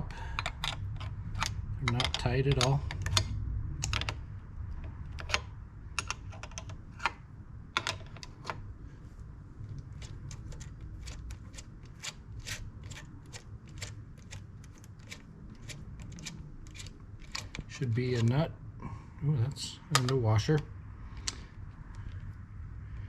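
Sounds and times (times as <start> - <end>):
low rumble: 0.0 - 6.2
wrench clicking on nuts: 0.3 - 4.2, 9.9 - 18.4.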